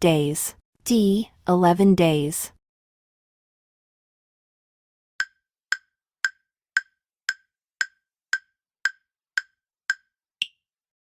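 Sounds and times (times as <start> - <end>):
countdown timer ticks: 5.2 - 10.6.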